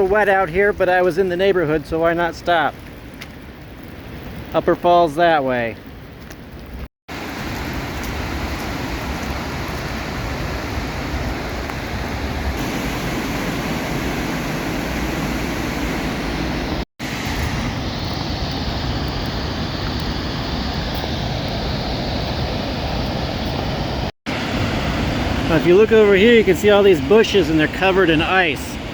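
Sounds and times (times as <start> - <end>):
waterfall rushing: 7.1 - 28.9.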